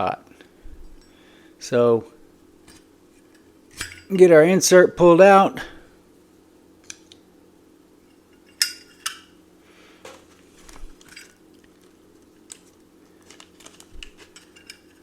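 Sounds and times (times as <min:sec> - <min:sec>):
soft rustle: 0:10.1 - 0:11.1.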